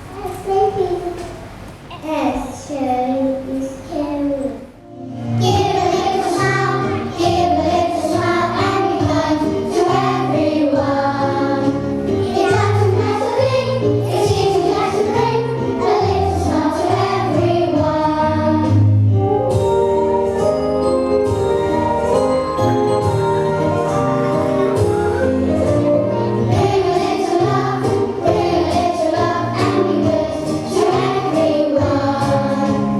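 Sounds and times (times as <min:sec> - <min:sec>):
instrumental accompaniment with bass: 0:04.9 - 0:32.9
children singing together: 0:05.4 - 0:18.9, 0:21.2 - 0:32.9.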